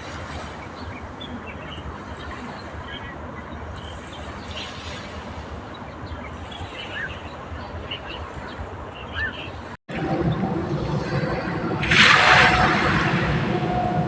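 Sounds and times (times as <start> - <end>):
low outdoor rumble: 0.0 - 14.0
small birds chirping: 0.6 - 9.7.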